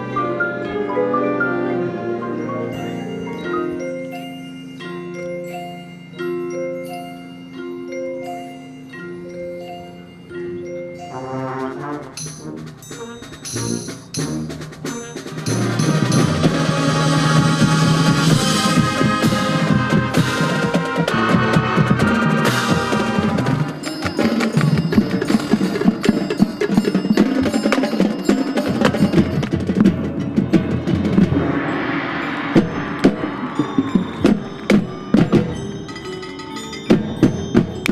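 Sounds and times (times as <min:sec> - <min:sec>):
marching band playing chords: 0:10.6 - 0:37.9
percussion section playing: 0:10.6 - 0:37.9.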